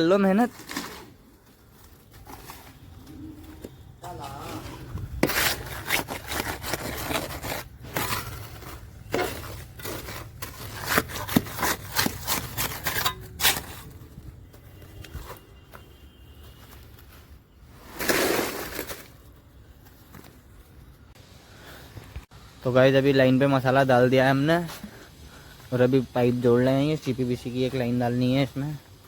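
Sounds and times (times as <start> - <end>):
tools scraping wet mortar: 4.4 - 14.0.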